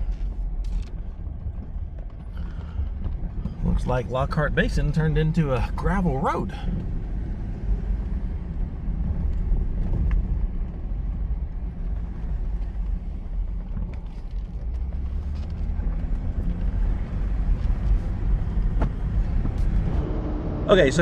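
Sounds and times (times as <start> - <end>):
gravel ticking: 0.0 - 20.1
engine and tyres rumbling: 0.0 - 21.0.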